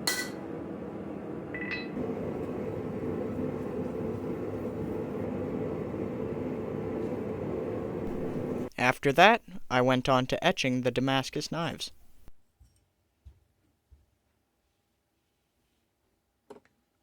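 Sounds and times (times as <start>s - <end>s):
steady machine hum: 0.0s - 12.4s.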